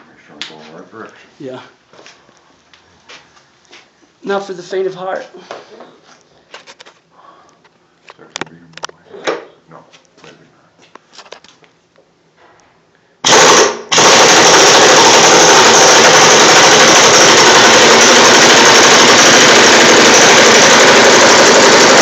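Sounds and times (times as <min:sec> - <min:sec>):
pneumatic impact wrench hammering: 0:13.2 - 0:22.0.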